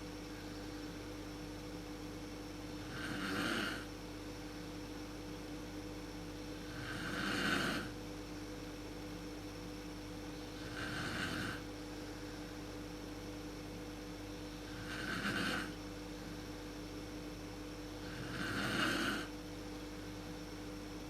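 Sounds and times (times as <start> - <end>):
woman snoring: 2.8 - 3.9, 6.6 - 8.0, 10.6 - 11.7, 14.6 - 15.8, 18.0 - 19.3.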